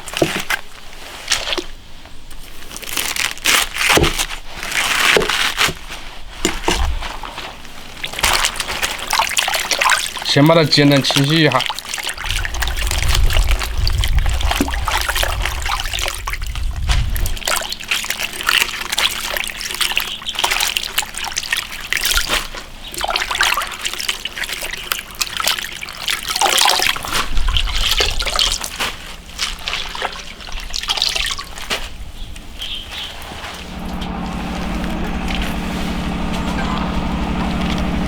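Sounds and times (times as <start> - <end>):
water trickling and splashing: 8.1 - 33.6.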